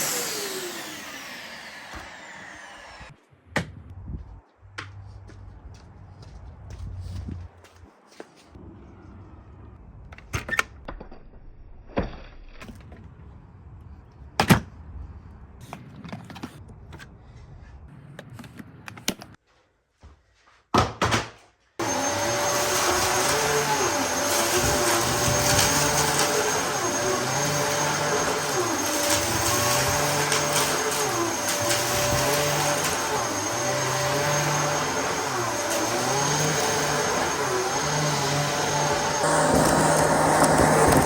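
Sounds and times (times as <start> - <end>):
vacuum cleaner running: 0.0 - 3.1, 21.8 - 41.0.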